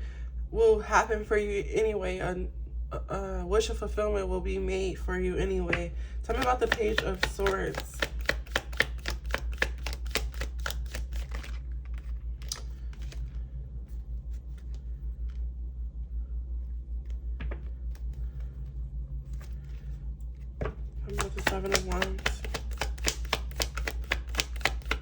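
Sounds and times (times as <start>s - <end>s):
steady low hum: 0.0s - 25.0s
cards being shuffled: 6.3s - 15.4s, 17.0s - 25.0s.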